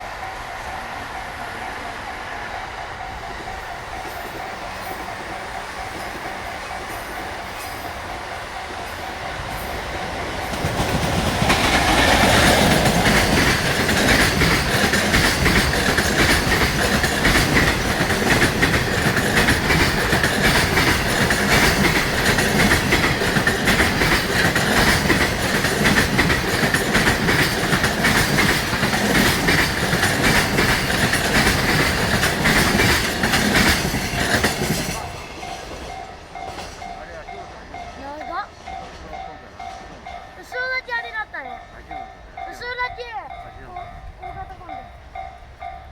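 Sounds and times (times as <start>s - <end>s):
crossing bell tone: 0.0s - 10.8s, 29.6s - 45.9s
train wheels clacking over rail joints: 1.1s - 45.9s.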